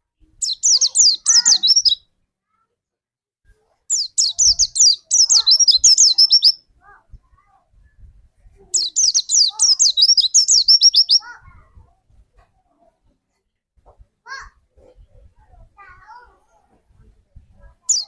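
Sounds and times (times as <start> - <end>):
bird chirping high notes: 8.8 - 11.3.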